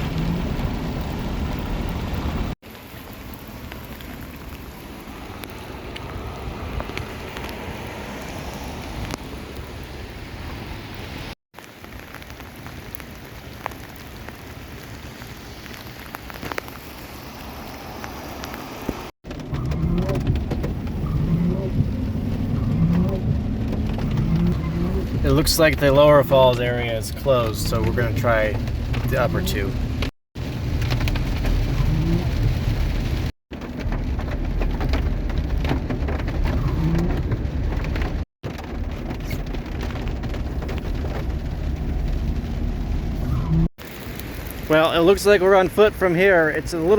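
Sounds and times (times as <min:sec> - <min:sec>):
car road and engine rumble: 0:00.0 - 0:46.9
steady rain: 0:00.0 - 0:46.9.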